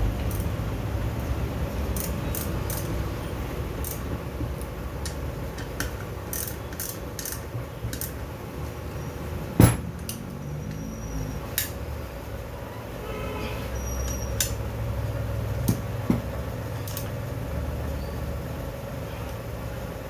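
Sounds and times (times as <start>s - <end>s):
metal parts and tools clinking: 0.2s - 0.6s, 1.9s - 3.2s, 3.8s - 8.2s, 11.4s - 11.8s, 16.8s - 17.2s
loud metallic knock: 9.6s - 10.0s.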